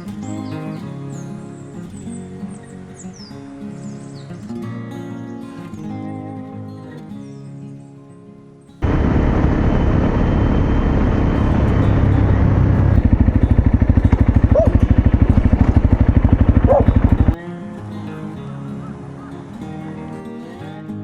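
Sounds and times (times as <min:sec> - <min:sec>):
motorcycle engine running: 0:08.8 - 0:17.4.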